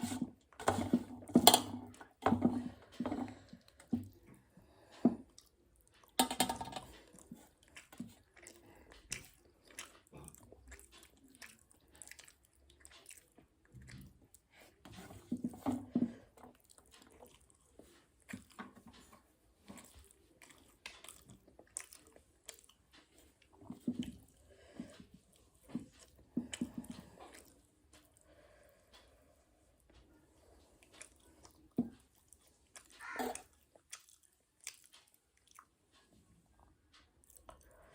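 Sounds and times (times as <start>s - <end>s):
chewing with wet mouth clicks: 5.2s - 6.2s, 6.9s - 14.8s, 16.3s - 29.4s, 30.4s - 37.9s.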